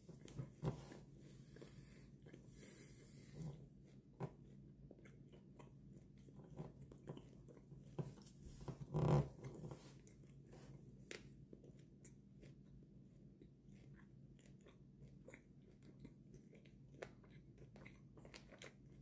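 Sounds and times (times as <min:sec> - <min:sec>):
person chewing steak: 0:10.0 - 0:19.0.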